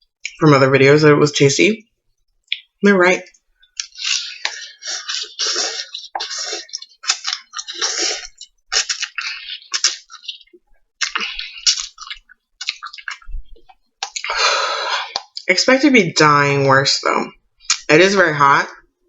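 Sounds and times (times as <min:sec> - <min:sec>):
person slurping noodles: 0:03.8 - 0:13.2
person breathing: 0:14.2 - 0:15.2.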